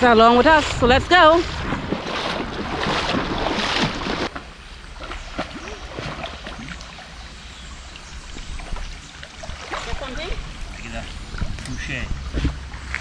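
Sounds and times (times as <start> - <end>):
river water rushing: 1.4 - 12.9.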